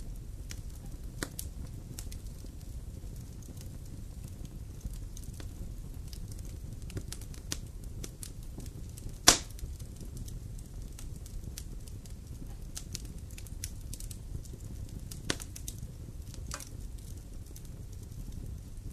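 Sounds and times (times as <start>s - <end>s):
campfire crackling: 0.0s - 18.9s
loud fire pop: 9.0s - 9.7s.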